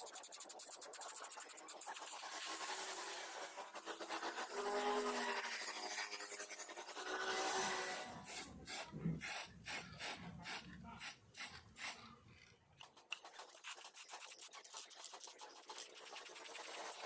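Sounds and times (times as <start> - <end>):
hand filing or sanding strokes: 0.0 - 8.6, 13.2 - 17.0.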